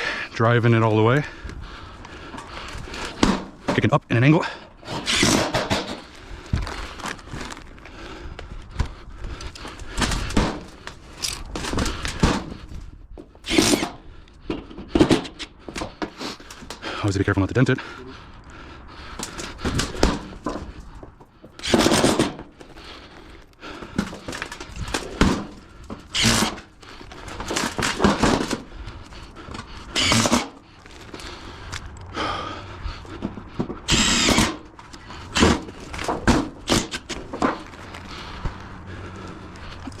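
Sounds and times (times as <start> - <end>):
power screw gun driving screws: 4.9 - 6.0, 13.4 - 14.0, 21.6 - 22.4, 26.0 - 26.7, 29.9 - 30.6, 33.9 - 34.7.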